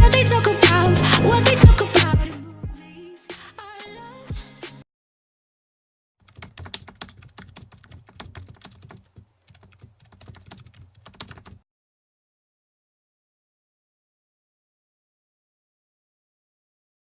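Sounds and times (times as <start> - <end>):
music: 0.0 - 4.8
rapid irregular clicks: 6.2 - 11.6.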